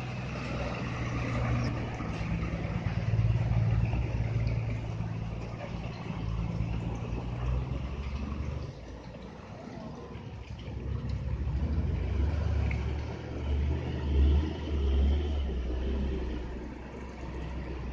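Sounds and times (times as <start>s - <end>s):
diesel engine pulsing: 0.0s - 17.9s.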